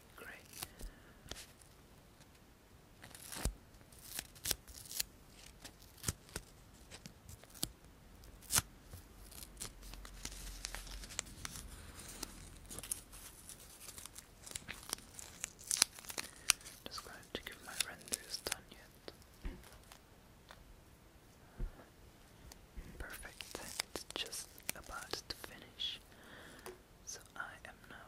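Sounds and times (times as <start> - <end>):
soft rustling: 8.9 - 20.6.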